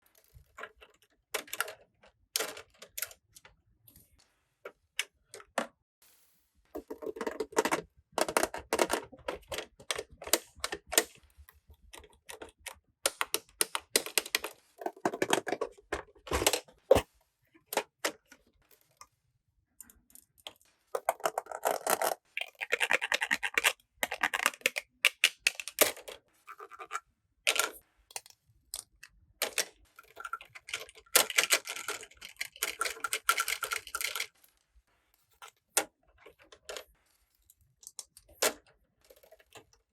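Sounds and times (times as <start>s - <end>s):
plastic toy pieces clicking: 21.0s - 28.2s, 28.8s - 34.3s.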